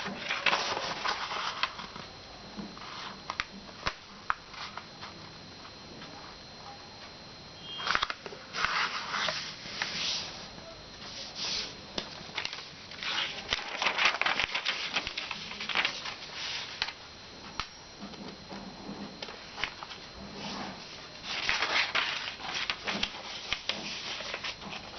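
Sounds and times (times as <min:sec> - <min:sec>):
paper creasing clicks: 0:00.0 - 0:02.1, 0:07.8 - 0:09.4, 0:12.0 - 0:17.0, 0:21.2 - 0:24.9
paper rustling and crinkling: 0:00.0 - 0:02.1, 0:02.8 - 0:05.3, 0:07.8 - 0:24.9.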